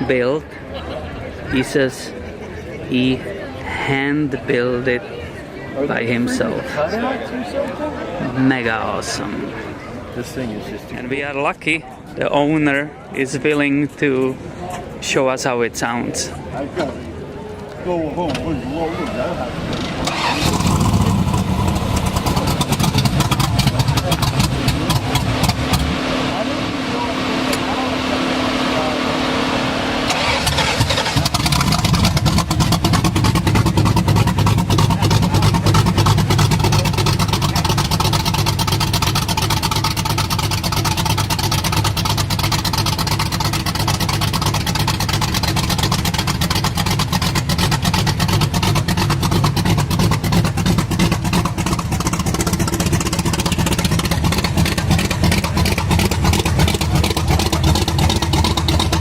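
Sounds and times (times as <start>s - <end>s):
car engine starting and running: 18.1s - 59.0s.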